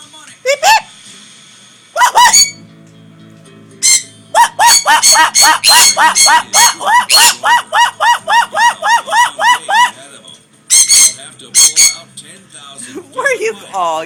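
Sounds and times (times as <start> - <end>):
parrot repeated calls: 2.0 - 2.6, 3.8 - 10.0, 10.7 - 12.0
parrot squawking: 2.0 - 2.6, 3.8 - 10.0, 10.7 - 12.1.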